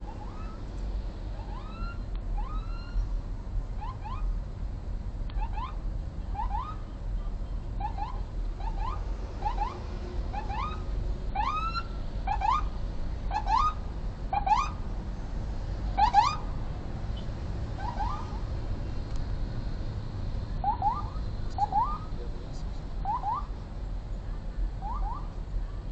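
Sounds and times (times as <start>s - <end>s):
low road rumble: 0.0s - 25.9s
electronic siren whoops: 1.5s - 3.0s, 11.4s - 12.6s, 17.8s - 18.4s, 20.7s - 22.1s, 23.0s - 23.5s, 24.8s - 25.3s.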